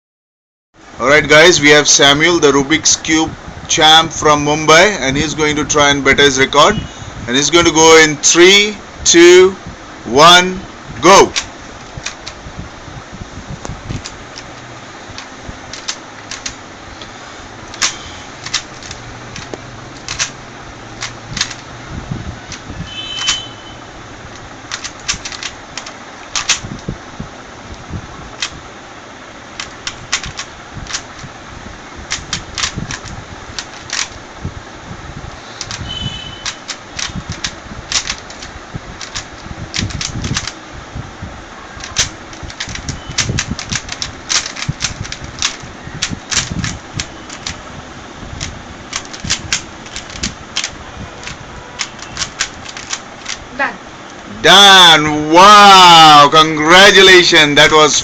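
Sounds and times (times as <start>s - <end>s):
puzzle cube clicking: 11.2s - 12.4s, 13.6s - 20.4s, 21.0s - 21.7s, 22.5s - 23.5s, 24.3s - 26.9s, 28.4s - 28.6s, 29.6s - 31.3s, 32.1s - 34.2s, 35.6s - 40.6s, 41.8s - 47.6s, 48.4s - 53.4s.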